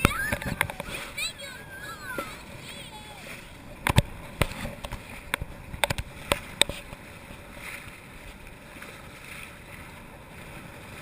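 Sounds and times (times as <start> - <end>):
water washing against boat: 0.0 - 11.0
sharp knocks and clicks: 3.8 - 6.8.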